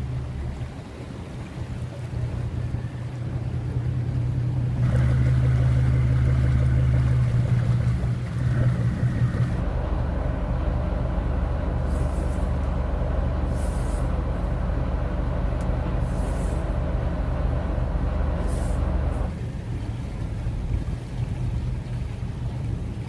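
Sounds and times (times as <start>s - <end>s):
boat engine humming: 0.0s - 23.0s
short hissing: 11.8s - 12.7s, 13.4s - 14.2s, 16.0s - 16.8s, 18.4s - 19.3s.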